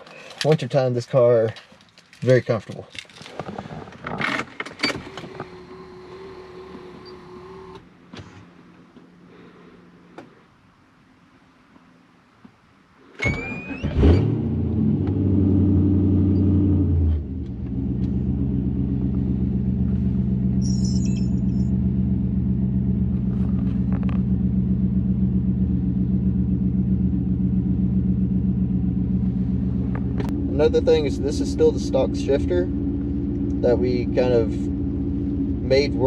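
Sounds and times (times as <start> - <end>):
engine starter cranking: 13.2 - 14.4
car engine idling: 17.2 - 36.0.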